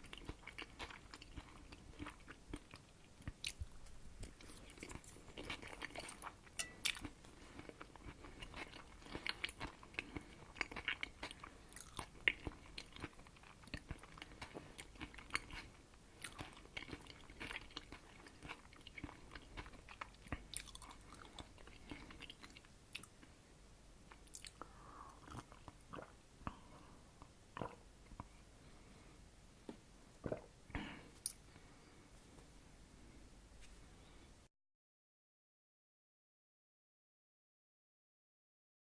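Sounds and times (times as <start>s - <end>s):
person chewing wet food: 0.0s - 23.4s, 24.1s - 28.8s, 30.2s - 31.6s.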